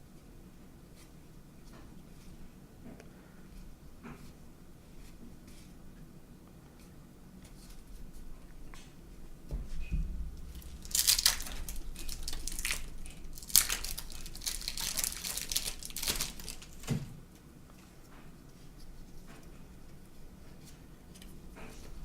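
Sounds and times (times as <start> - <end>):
soft bump: 9.5 - 10.8
wrapper crinkling and tearing: 10.4 - 17.0.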